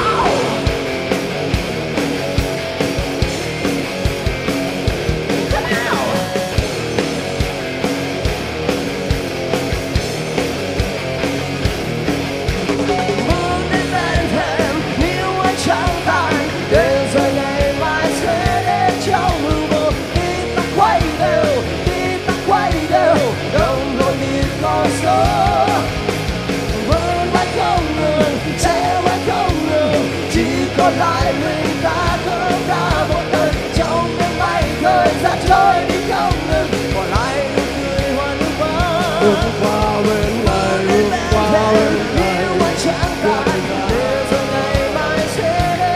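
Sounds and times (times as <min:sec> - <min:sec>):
lead vocal singing: 0:00.0 - 0:00.9, 0:12.9 - 0:45.9
rock band playing: 0:00.0 - 0:45.9.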